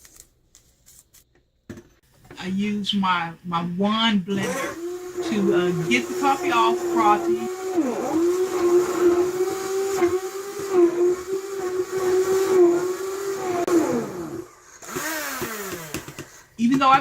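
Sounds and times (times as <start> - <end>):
immersion blender motor running: 4.4 - 16.5.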